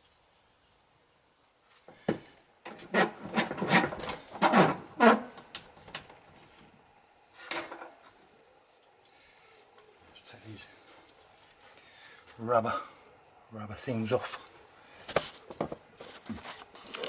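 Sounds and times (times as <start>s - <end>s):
scraping on metal: 2.7s - 5.5s.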